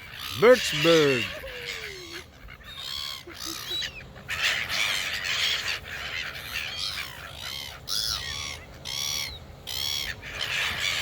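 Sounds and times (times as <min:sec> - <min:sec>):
flock of birds calling: 0:00.0 - 0:11.0.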